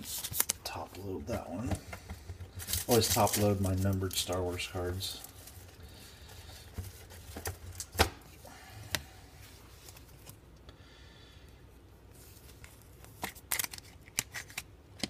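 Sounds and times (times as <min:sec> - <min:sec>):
card rubbing in plastic sleeve: 0:02.4 - 0:07.7.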